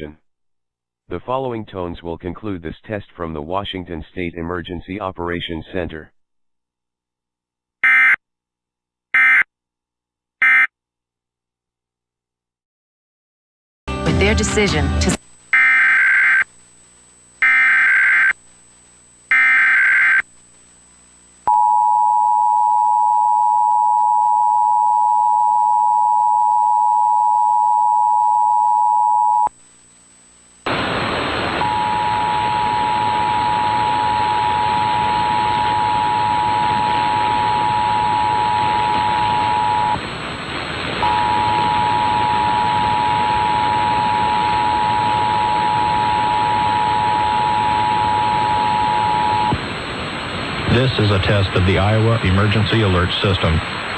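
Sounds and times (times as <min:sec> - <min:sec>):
data screech bursts: 0:10.4 - 0:10.7
steady hiss: 0:29.6 - 0:35.7, 0:49.6 - 0:53.9.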